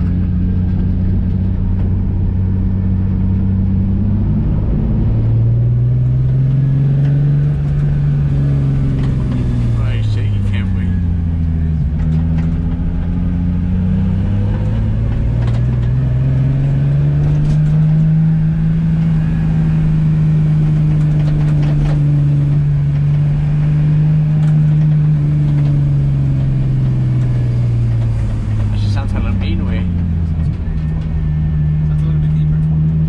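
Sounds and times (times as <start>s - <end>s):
car engine accelerating: 0.0s - 33.0s.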